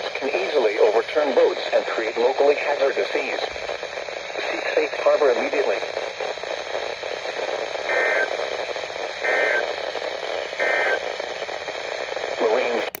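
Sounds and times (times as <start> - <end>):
radio hiss: 0.0 - 13.0
data tone bursts: 6.5 - 11.0.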